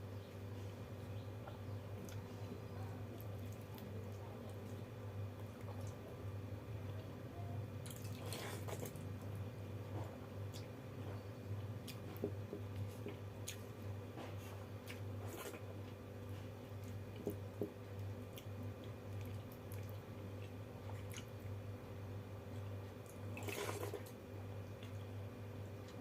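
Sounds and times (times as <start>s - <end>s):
steady low hum: 0.0s - 26.0s
wet chewing and squishing: 1.4s - 2.5s, 3.1s - 6.1s, 7.8s - 22.0s, 22.6s - 25.1s.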